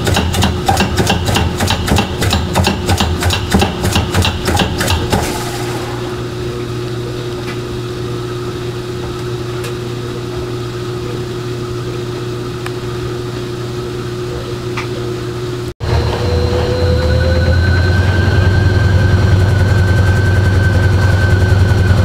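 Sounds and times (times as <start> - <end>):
washing machine motor knocking: 0.0 - 6.4
washing machine motor hum: 0.0 - 22.0.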